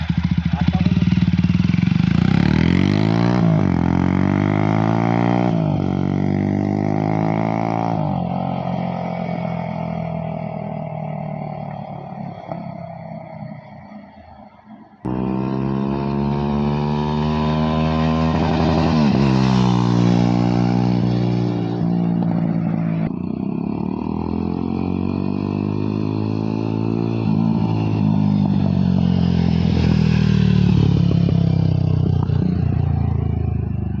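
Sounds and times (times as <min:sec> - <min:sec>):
motorcycle engine accelerating: 0:00.0 - 0:34.0.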